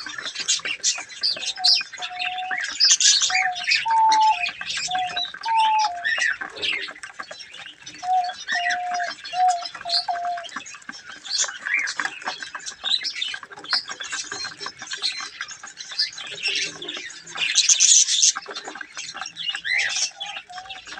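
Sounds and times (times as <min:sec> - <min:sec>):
budgerigars chattering: 0:00.0 - 0:20.9
low piping bird call: 0:03.3 - 0:06.4.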